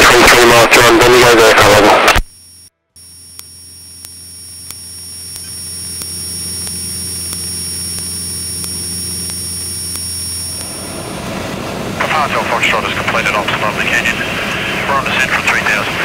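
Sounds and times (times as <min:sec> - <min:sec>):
aircraft engine and propeller droning: 0:03.2 - 0:16.0.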